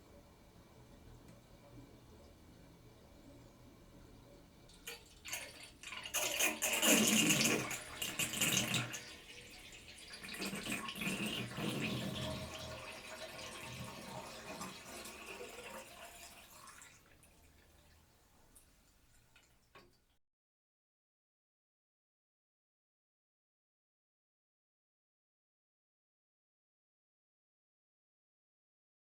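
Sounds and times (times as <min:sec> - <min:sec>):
water gurgling down plughole: 0:05.2 - 0:16.6.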